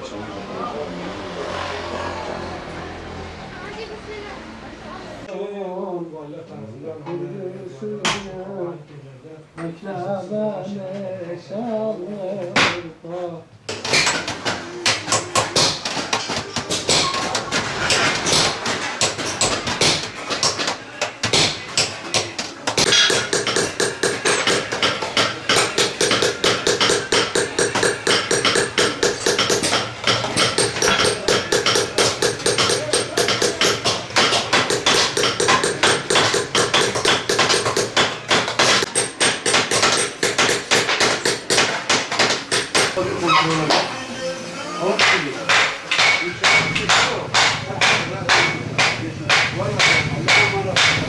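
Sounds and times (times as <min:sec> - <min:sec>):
fast rhythmic hand hammering: 0:13.7 - 0:43.0, 0:45.0 - 0:51.0.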